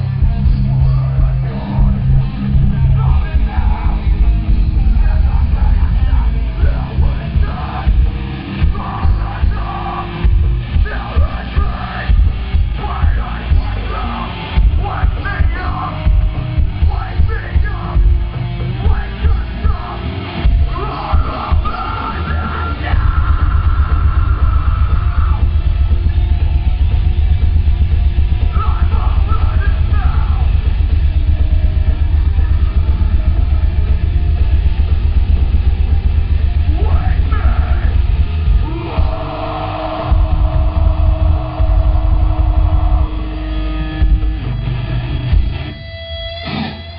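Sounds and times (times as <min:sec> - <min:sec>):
fast pounding drums: 0:00.0 - 0:45.7
heavy metal band playing: 0:00.0 - 0:46.9
shouted vocals: 0:05.6 - 0:18.1, 0:18.8 - 0:25.6, 0:28.4 - 0:30.7, 0:36.6 - 0:43.7.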